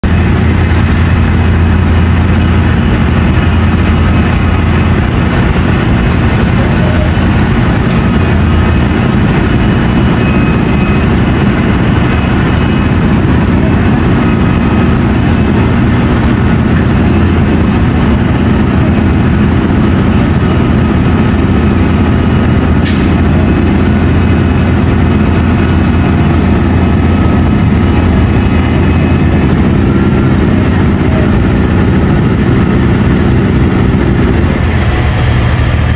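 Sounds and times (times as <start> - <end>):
heavy diesel engines rumbling: 0.0 - 35.9.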